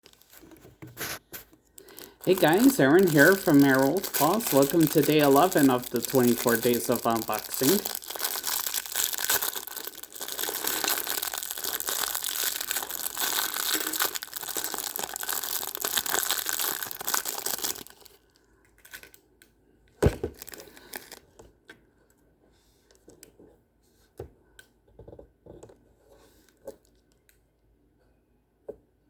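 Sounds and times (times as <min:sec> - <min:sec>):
packaging crinkling and ripping: 0:00.0 - 0:19.2, 0:20.0 - 0:21.3.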